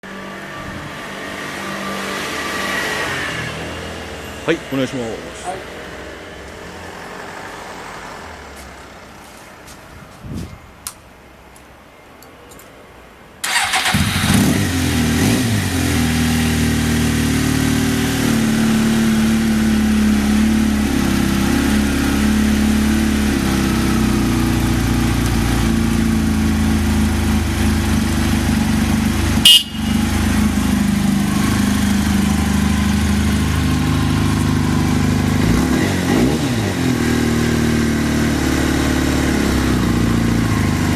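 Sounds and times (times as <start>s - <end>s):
motorcycle engine idling: 22.8s - 35.4s.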